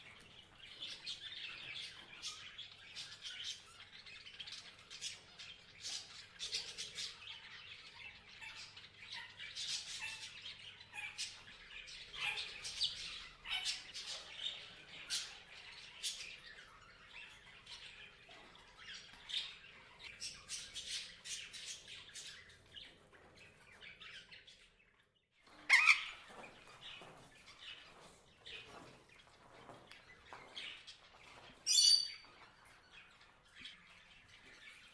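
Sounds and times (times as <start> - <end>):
parrots chirping and squawking: 5.9 - 22.5, 25.4 - 27.0.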